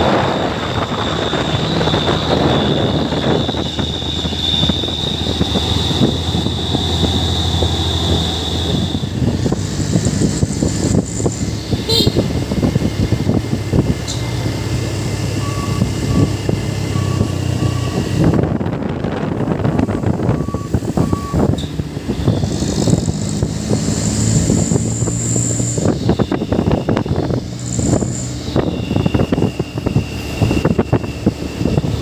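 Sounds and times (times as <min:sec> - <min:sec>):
truck engine running: 0:00.0 - 0:32.0
reversing alarm beeping: 0:00.3 - 0:09.2, 0:15.3 - 0:18.2, 0:19.9 - 0:23.1, 0:24.0 - 0:32.0.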